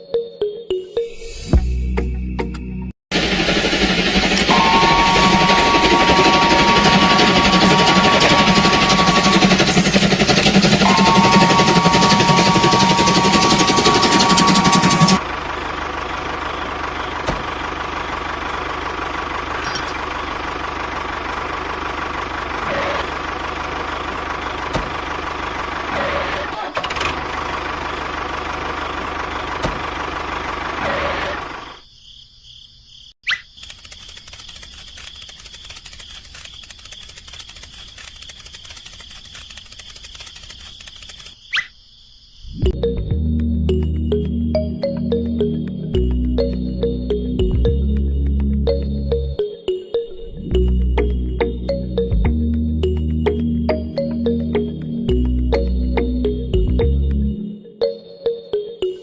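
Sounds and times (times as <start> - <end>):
high whine: 1.5 - 15.4
engine idling: 3.1 - 31.8
rapid clicking and rattling: 6.1 - 15.2, 33.6 - 41.4.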